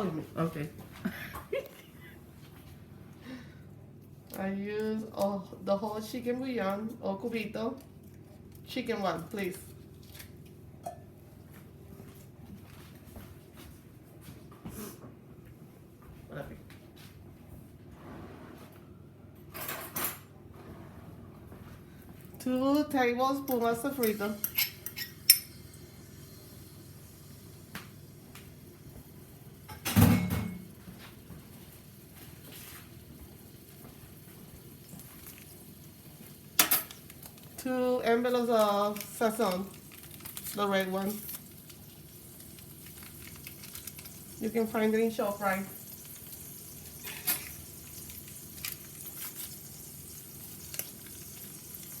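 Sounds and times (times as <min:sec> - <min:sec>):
food sizzling in hot oil: 0:23.5 - 0:29.7, 0:31.4 - 0:52.0
sharp crackles: 0:38.5 - 0:44.5.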